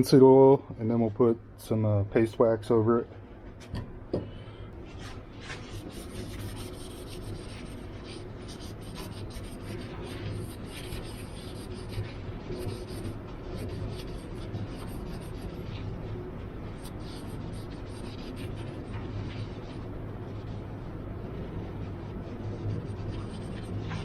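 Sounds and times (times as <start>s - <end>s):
scratchy rubbing on wood: 4.9s - 15.9s.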